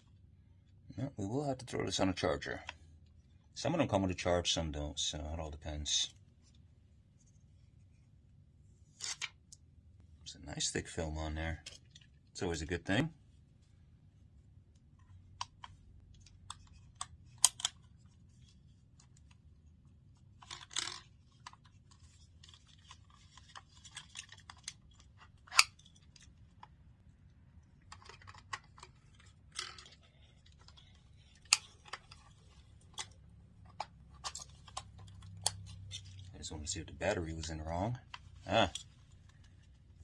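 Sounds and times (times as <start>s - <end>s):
plastic clicks: 15.3s - 17.9s.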